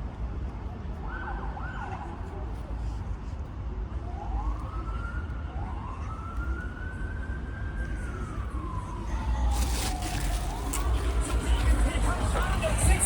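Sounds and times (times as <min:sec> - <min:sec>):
low rumble of traffic or wind: 0:00.0 - 0:13.0
emergency siren wailing: 0:04.1 - 0:13.0.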